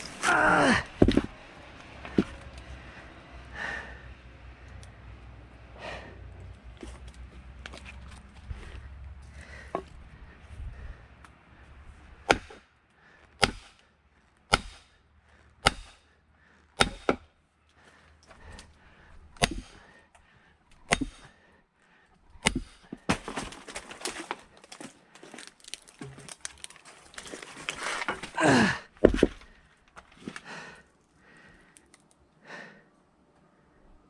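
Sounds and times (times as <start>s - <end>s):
hammer striking splitting wedge: 12.2s - 12.6s, 13.4s - 13.8s, 14.5s - 14.9s, 15.6s - 16.0s, 16.8s - 17.2s, 19.4s - 19.8s, 20.9s - 21.2s, 22.4s - 23.2s
crackling and rustling: 23.2s - 28.4s.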